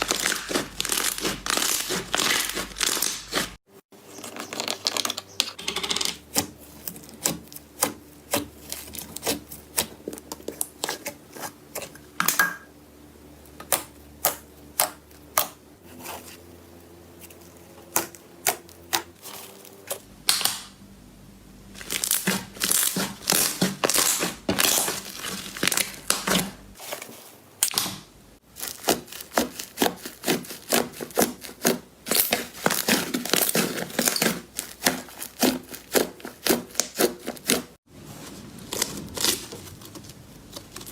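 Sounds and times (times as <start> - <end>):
slime crackling: 0.0 - 3.6, 21.8 - 26.8, 27.7 - 37.6.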